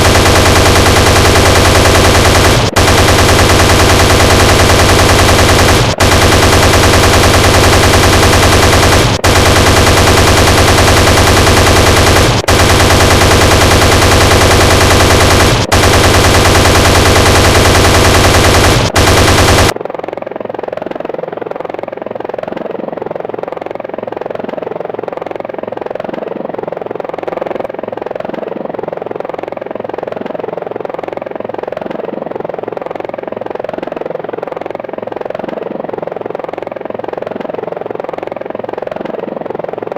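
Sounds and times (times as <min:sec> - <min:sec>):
helicopter chain gun firing: 0:00.0 - 0:19.8
helicopter rotor and engine: 0:00.0 - 0:39.9.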